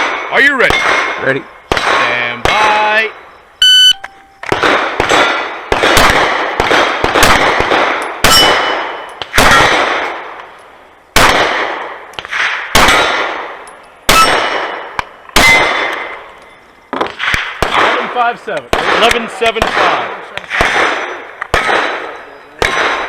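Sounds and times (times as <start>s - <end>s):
pistol shots: 0.0s - 3.0s, 4.4s - 10.5s, 11.1s - 16.3s, 16.9s - 23.0s
steel plates ringing: 8.0s - 9.6s.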